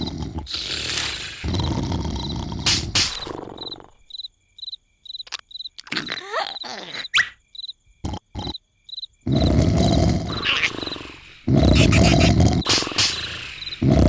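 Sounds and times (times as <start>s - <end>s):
loud rumbling snore: 0.0s - 4.0s, 9.3s - 14.0s
cricket-like chirping: 0.0s - 14.0s
short clicks: 5.2s - 6.0s.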